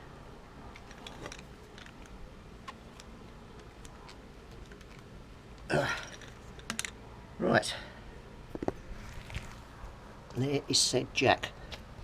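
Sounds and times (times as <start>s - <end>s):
metal crutch clicks and taps: 6.2s - 7.0s.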